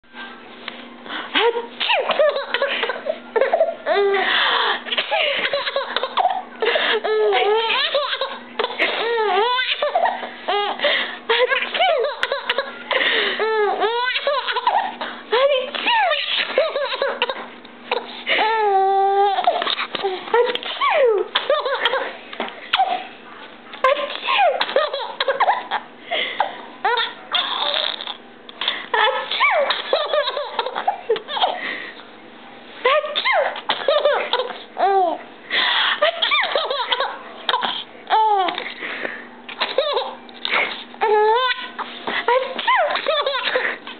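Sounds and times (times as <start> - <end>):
young child laughing: 1.3 - 23.2, 39.5 - 43.9
baby giggling: 1.4 - 4.2, 4.9 - 23.1, 23.8 - 25.8, 26.4 - 31.6, 32.8 - 35.2, 36.0 - 38.8, 39.5 - 43.9
baby squealing: 7.0 - 10.8, 13.4 - 14.9, 15.8 - 17.3, 17.9 - 22.0, 26.9 - 28.2, 28.9 - 31.6, 32.9 - 35.2, 36.0 - 38.6, 41.0 - 43.4
breathy gasps: 35.5 - 36.0.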